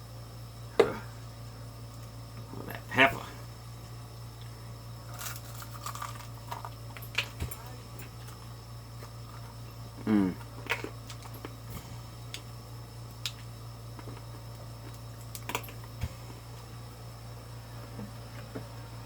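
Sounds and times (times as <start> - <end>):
steady low hum: 0.0 - 19.0
person humming mm: 10.0 - 10.4.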